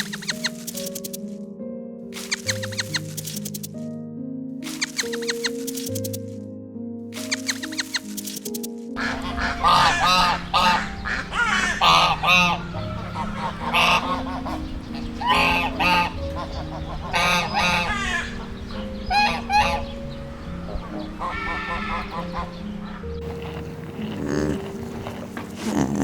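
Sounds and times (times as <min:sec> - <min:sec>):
geese honking: 0:09.0 - 0:18.5, 0:20.7 - 0:23.9.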